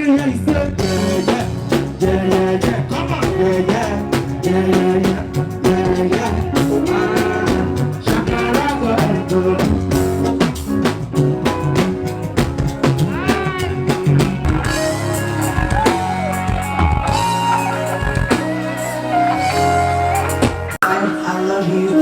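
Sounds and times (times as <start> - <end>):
band music: 0.0 - 22.0
drum kit: 0.0 - 22.0
guitar: 0.0 - 22.0.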